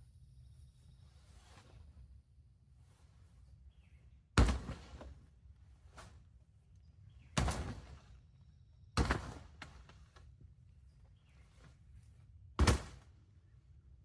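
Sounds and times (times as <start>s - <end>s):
sharp thunks of collapsing frame: 7.4s - 8.0s, 12.6s - 13.0s.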